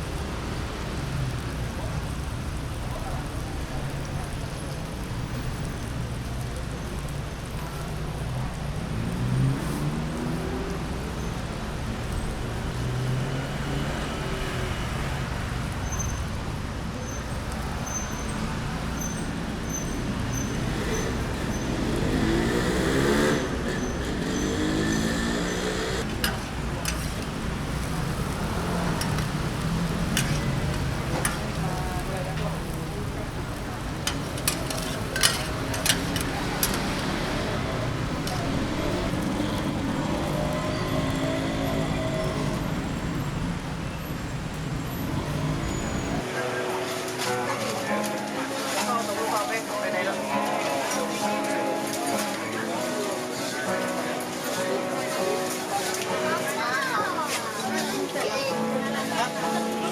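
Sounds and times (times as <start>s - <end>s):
vehicles passing: 0.0s - 59.9s
engine accelerating: 20.6s - 46.2s
sharp clicks: 26.0s - 32.8s.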